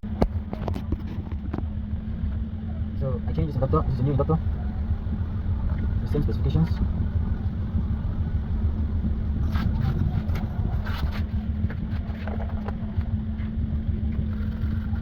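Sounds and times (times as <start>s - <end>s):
low-pitched rumble: 0.0s - 15.0s
handling clicks and scrapes: 9.0s - 15.0s.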